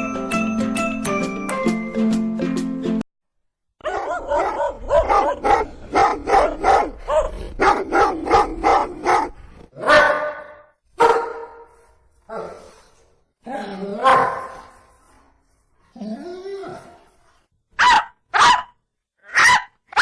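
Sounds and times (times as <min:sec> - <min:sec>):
music jingle: 0:00.0 - 0:03.0
dog barking: 0:03.8 - 0:12.7, 0:14.0 - 0:14.7, 0:17.8 - 0:20.0.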